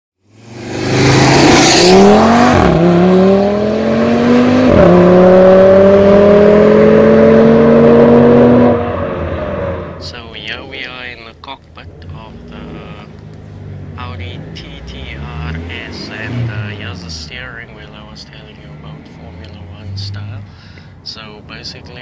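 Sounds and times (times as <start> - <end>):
car engine accelerating hard: 0.3 - 10.2, 11.8 - 20.7.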